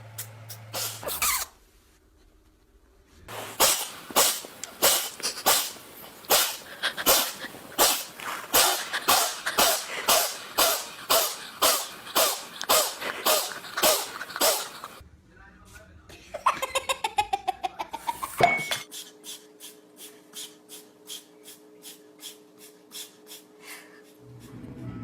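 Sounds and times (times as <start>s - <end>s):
cat sneezing: 0.8s - 1.5s, 3.3s - 15.0s.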